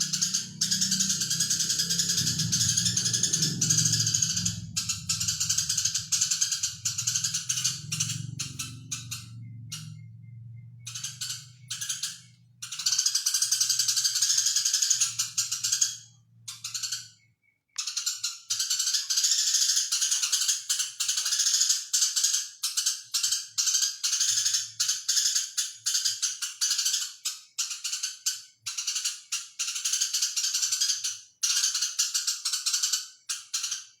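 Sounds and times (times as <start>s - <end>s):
sparrow chirping rapidly: 0.0s - 22.4s.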